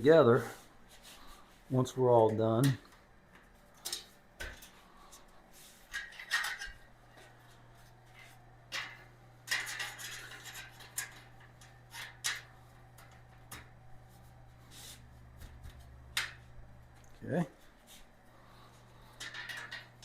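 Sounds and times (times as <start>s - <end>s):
metal shelf parts clinking: 5.9s - 6.9s, 8.1s - 13.7s, 19.1s - 20.0s.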